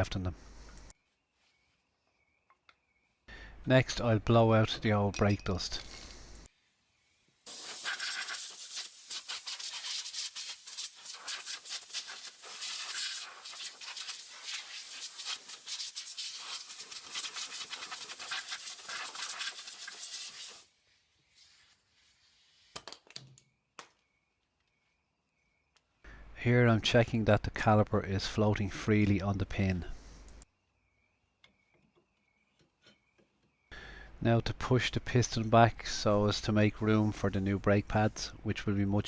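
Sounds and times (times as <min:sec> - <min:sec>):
compressed air hissing: 0:07.4 - 0:22.7.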